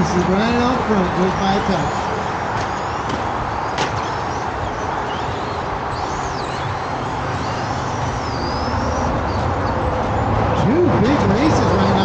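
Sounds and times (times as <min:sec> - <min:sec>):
rc truck motors whining: 0:01.4 - 0:10.4.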